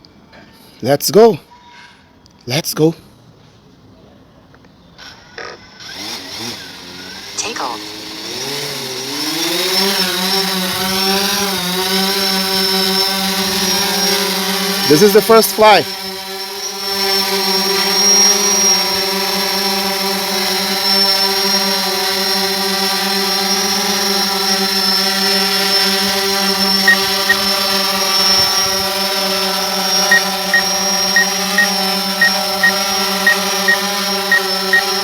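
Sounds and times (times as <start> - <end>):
drone propellers humming: 6.6 - 35.0
short high beeps: 30.1 - 35.0.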